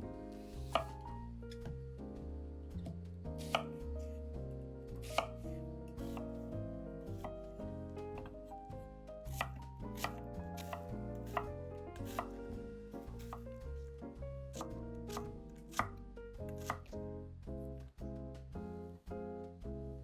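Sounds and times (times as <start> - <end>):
soft background music: 0.0 - 20.0
knife chopping on cutting board: 0.4 - 1.8, 2.8 - 4.1, 4.9 - 6.4, 7.1 - 7.5, 8.1 - 8.4, 9.2 - 13.6, 14.5 - 17.0.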